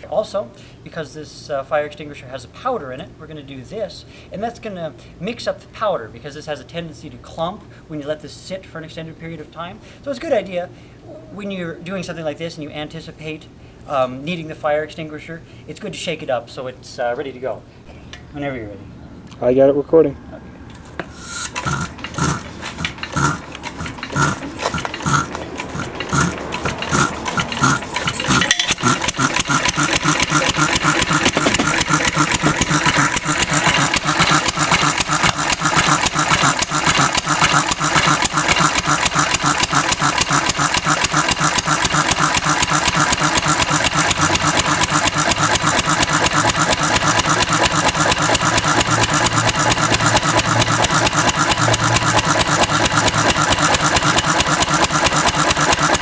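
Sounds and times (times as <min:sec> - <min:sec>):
stationary engine running: 0:21.0 - 0:56.0.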